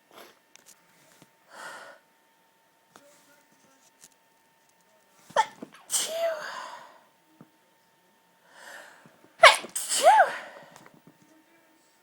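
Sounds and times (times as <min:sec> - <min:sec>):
woman's stifled sneeze: 0:05.3 - 0:06.7, 0:09.4 - 0:10.6.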